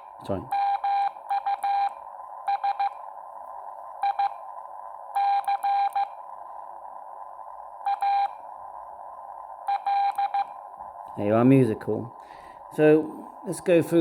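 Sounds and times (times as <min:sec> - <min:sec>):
morse code beeping tone: 0:00.5 - 0:01.9, 0:02.5 - 0:03.0, 0:05.2 - 0:06.1, 0:07.9 - 0:08.4, 0:09.7 - 0:10.5
steady hiss: 0:10.6 - 0:14.0.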